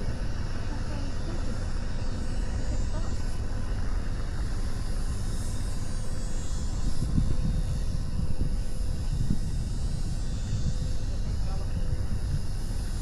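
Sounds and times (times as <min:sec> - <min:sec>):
steady low machinery hum: 0:00.0 - 0:13.0
wind buffeting microphone: 0:02.9 - 0:13.0.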